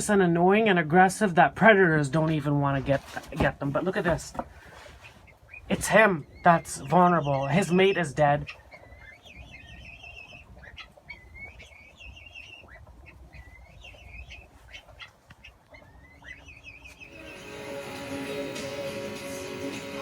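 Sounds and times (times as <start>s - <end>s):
birds chirping in trills: 4.9s - 20.0s.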